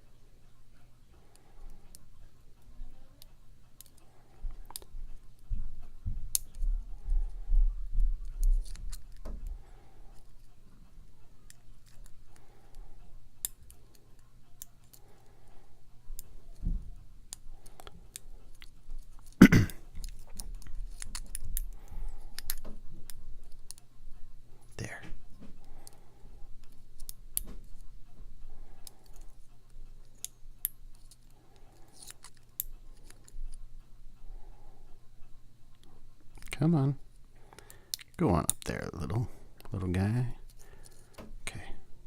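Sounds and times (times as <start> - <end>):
faint steady hum: 0.0 - 42.0
small metallic clicks and scrapes: 20.0 - 23.9, 28.7 - 33.6.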